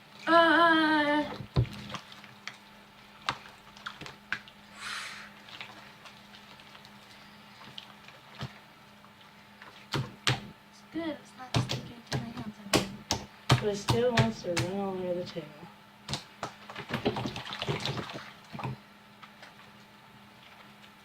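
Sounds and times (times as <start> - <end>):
brief hiss: 4.8 - 5.3.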